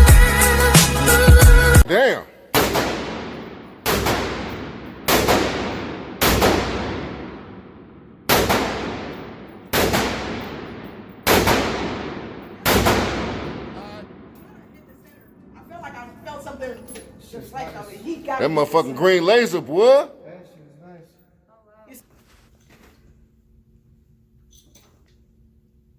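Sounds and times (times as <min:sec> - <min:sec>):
rifle shots with echo: 0:02.5 - 0:14.5.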